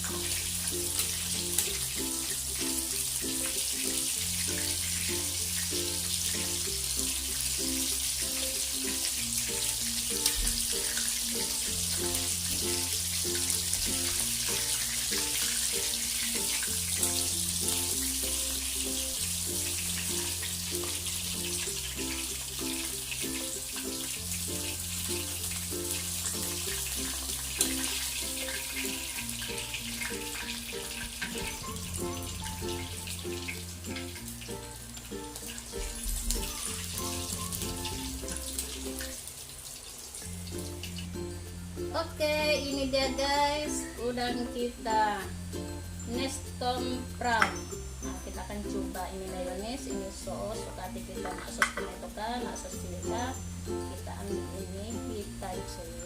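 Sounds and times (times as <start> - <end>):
music with bass line: 0.0 - 39.2
prawns frying in hot oil: 0.0 - 56.0.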